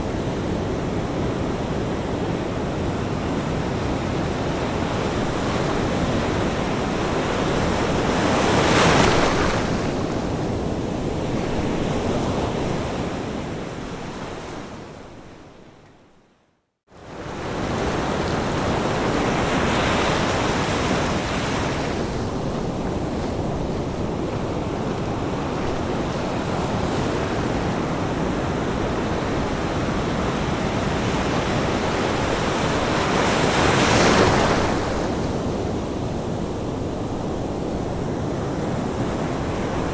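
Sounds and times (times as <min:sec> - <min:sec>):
ocean surf breaking on beach: 0:00.0 - 0:14.9, 0:17.0 - 0:39.9.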